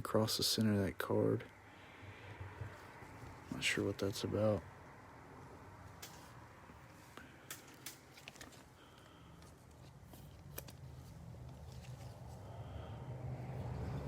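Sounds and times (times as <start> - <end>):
trading cards rustling: 6.0 - 12.7.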